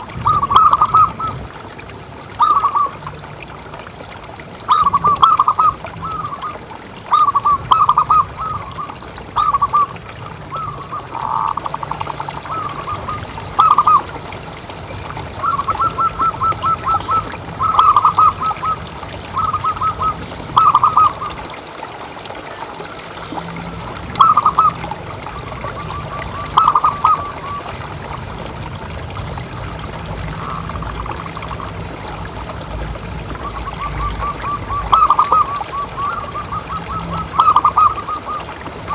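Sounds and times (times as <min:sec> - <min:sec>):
water trickling: 0:00.0 - 0:38.9
doves cooing: 0:00.1 - 0:01.6, 0:04.7 - 0:21.6, 0:22.8 - 0:28.0, 0:33.2 - 0:38.9.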